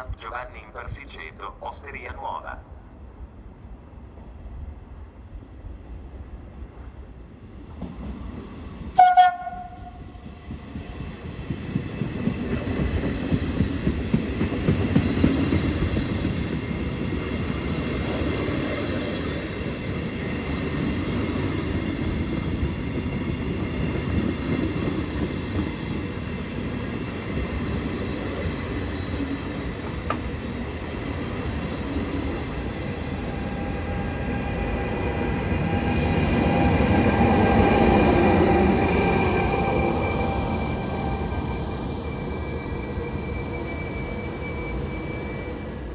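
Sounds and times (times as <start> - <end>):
train wheels rumbling on rails: 4.2 - 45.9
train horn blast: 9.0 - 10.0.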